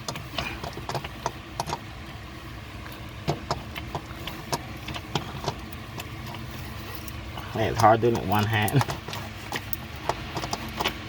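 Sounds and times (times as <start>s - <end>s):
metal clicks and knocks: 0.0s - 1.8s
steady low hum: 0.0s - 11.0s.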